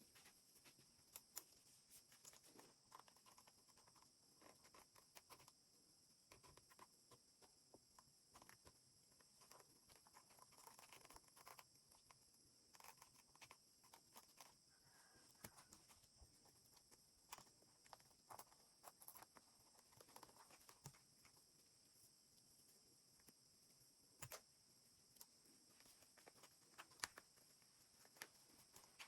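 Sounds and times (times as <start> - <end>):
hands handling a doll: 25.2 - 29.0.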